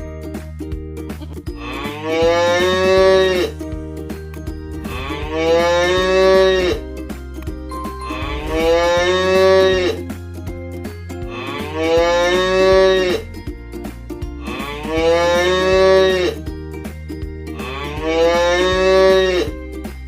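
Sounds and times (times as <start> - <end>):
cow mooing: 1.8 - 3.5, 4.8 - 6.8, 8.1 - 10.0, 11.4 - 13.2, 14.5 - 16.4, 17.6 - 19.5.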